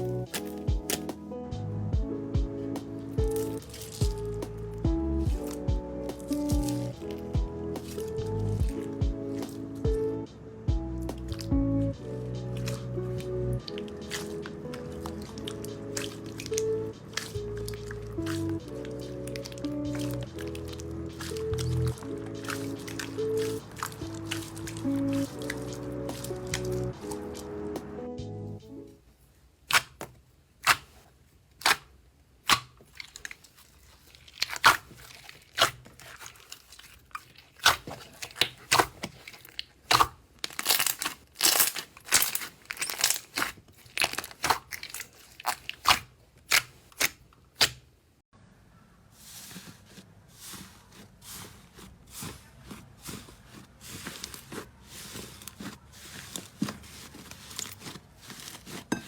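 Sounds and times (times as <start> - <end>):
slime crackling and popping: 0.0 - 1.2, 2.8 - 9.9, 11.0 - 11.5, 12.2 - 27.5, 29.7 - 30.0, 31.6 - 47.8.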